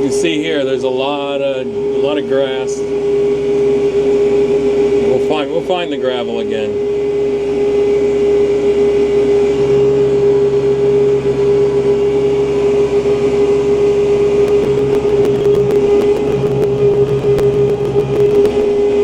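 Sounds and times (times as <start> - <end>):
steady whine: 14.4 - 19.0
quick sharp ticks: 14.5 - 18.8
lower hum: 14.5 - 18.9.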